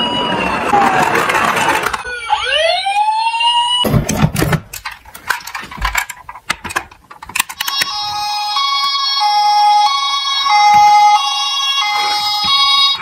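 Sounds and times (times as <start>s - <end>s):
toy siren rising wail: 0.0s - 3.9s, 7.6s - 13.0s
two-tone siren: 0.0s - 3.9s, 7.6s - 13.0s
clicks and knocks: 3.9s - 7.9s.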